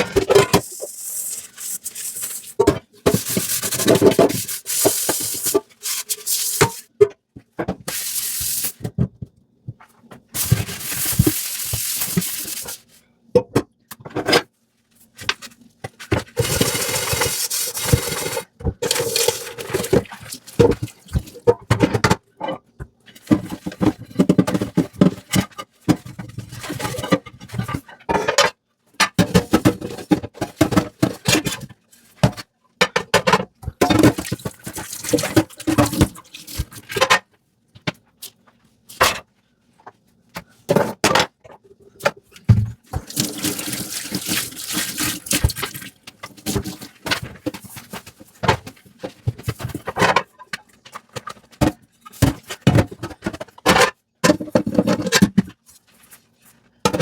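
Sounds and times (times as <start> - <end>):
dish scrubbing: 0.0 - 6.9, 7.8 - 8.9, 10.4 - 12.9, 16.0 - 21.5, 34.0 - 37.0, 42.9 - 48.1
water running in sink: 0.6 - 6.8, 10.4 - 12.8, 16.4 - 21.4, 34.1 - 36.7, 43.0 - 46.7.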